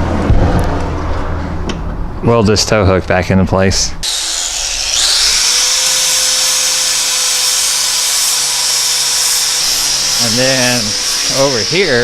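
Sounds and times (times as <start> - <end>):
power grinder grinding steel: 4.0 - 12.0.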